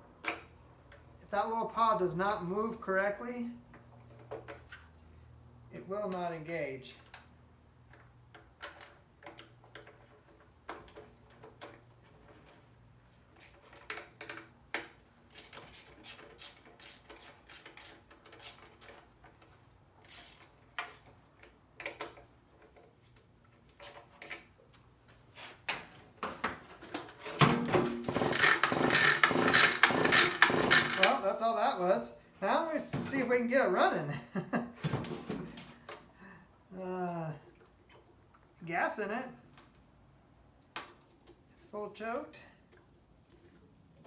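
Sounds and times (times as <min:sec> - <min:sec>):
small parts clicking: 0:13.4 - 0:22.2, 0:28.2 - 0:31.2
recoil starter rattling: 0:27.4 - 0:31.2.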